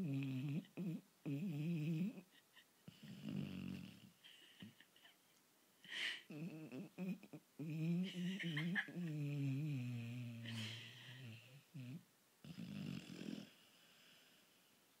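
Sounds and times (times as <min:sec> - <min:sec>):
dog snoring: 0:00.0 - 0:02.2, 0:02.9 - 0:04.2, 0:06.3 - 0:08.2, 0:08.8 - 0:10.5, 0:11.2 - 0:14.4.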